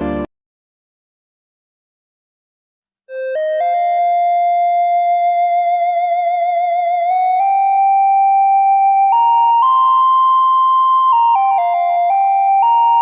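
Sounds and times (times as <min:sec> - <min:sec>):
electronic melody: 0:03.1 - 0:13.0.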